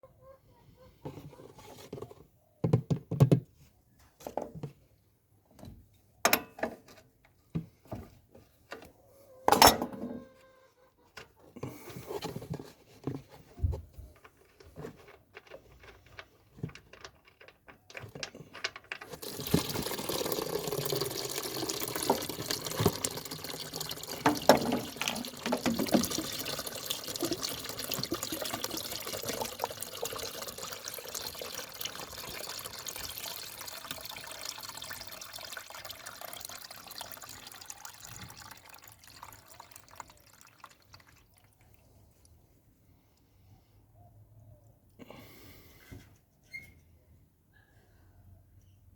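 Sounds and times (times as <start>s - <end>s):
handling knocks and clicks: 13.0s - 19.2s
liquid pouring into container: 19.0s - 42.0s.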